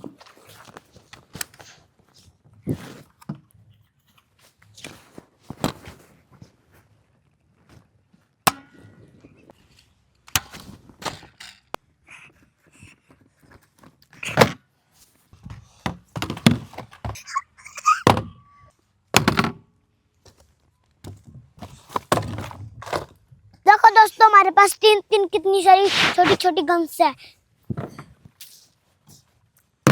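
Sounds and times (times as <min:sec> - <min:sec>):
plastic toys knocking and clicking: 0:15.8 - 0:18.4, 0:19.1 - 0:19.6.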